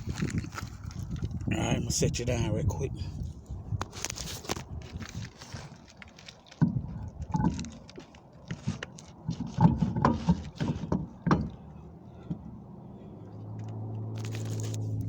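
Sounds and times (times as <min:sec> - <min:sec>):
knocks and clunks of handling: 0:03.9 - 0:12.6.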